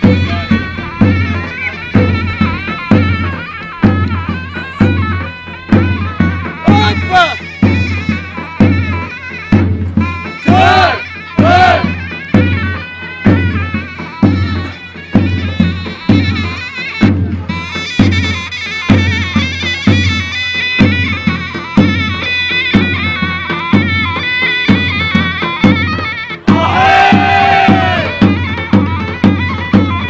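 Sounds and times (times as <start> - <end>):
heavy bass drum: 0.0 - 12.6, 26.4 - 30.0
shrill reed wind instrument: 0.0 - 30.0.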